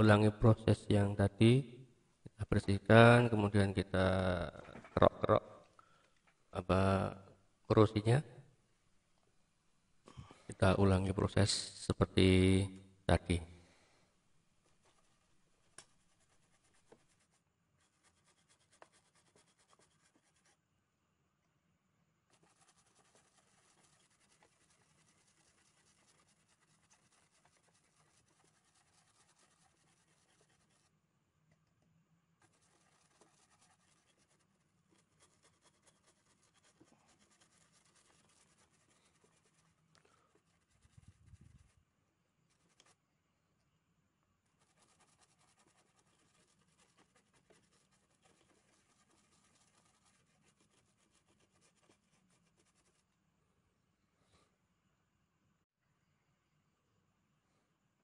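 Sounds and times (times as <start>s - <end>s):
tool scraping circuit board: 22.3s - 30.9s, 32.4s - 39.7s.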